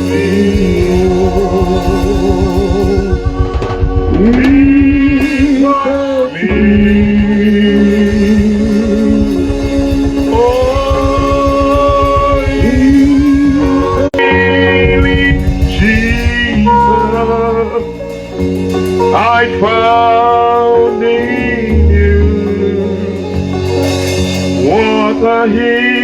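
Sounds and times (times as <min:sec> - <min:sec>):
person singing long notes: 0:00.0 - 0:17.9
band accompaniment: 0:00.0 - 0:26.0.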